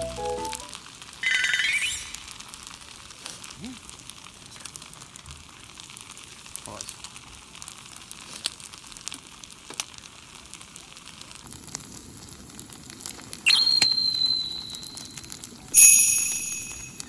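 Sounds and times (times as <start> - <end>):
loud steady high tone: 0.0 - 2.0
bright ringing tone: 0.0 - 2.3, 13.5 - 15.1, 15.8 - 17.0
food sizzling in a pan: 0.0 - 17.0.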